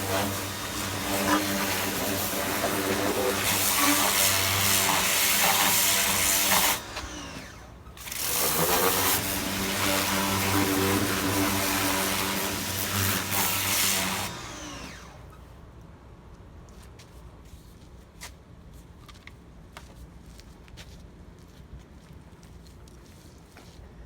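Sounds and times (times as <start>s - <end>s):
pressure washer motor hum: 0.0s - 15.3s.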